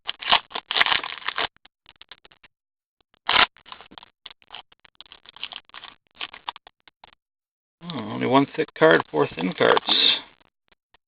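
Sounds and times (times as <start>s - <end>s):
trading cards scraping and rustling: 0.0s - 2.5s, 3.2s - 6.8s, 8.5s - 10.5s.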